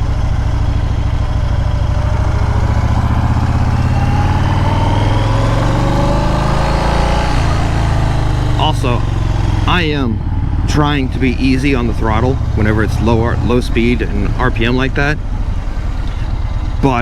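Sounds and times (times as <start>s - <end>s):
motorcycle engine accelerating: 0.0s - 17.0s.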